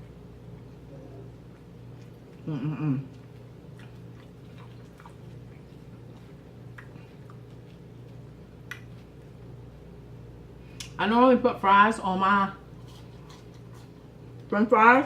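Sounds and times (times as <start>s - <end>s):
chewing and lip smacking: 0.0s - 9.6s, 12.7s - 14.5s
wavering voice hum: 2.4s - 3.3s.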